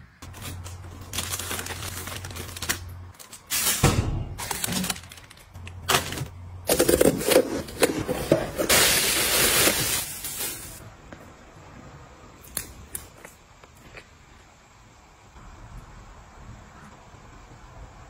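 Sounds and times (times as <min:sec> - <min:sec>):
crinkly rustling: 0:00.2 - 0:03.8, 0:04.4 - 0:10.8.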